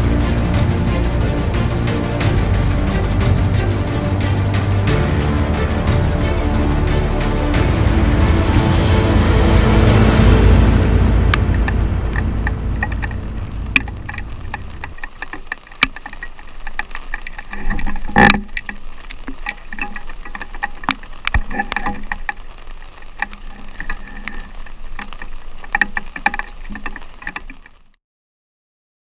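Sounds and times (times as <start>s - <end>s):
underwater clicks and crackles: 11.4s - 28.0s.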